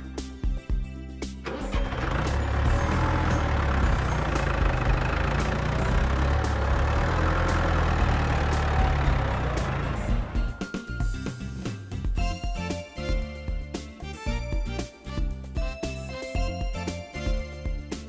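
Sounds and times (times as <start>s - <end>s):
heavy vehicle engine running: 1.4s - 10.7s.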